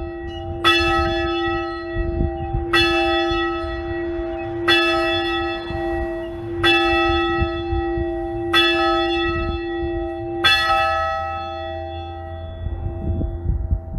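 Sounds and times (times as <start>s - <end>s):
church bell tolling: 0.0s - 13.9s.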